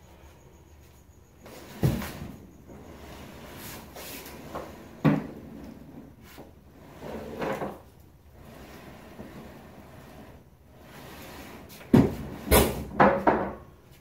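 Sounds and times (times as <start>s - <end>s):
scraping rub: 8.4s - 11.9s.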